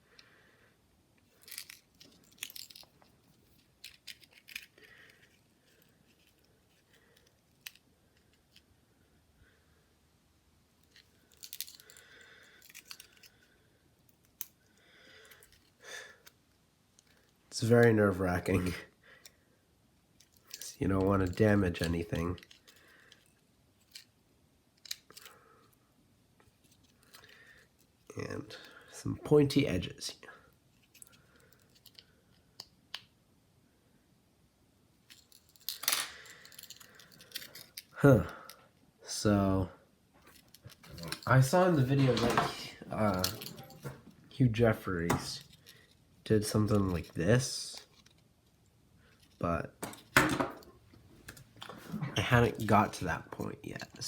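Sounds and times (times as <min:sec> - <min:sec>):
small hand tools clicking and scraping: 0:01.2 - 0:08.6, 0:10.8 - 0:13.5, 0:20.2 - 0:24.1, 0:30.7 - 0:32.7, 0:35.1 - 0:38.0, 0:40.2 - 0:44.0.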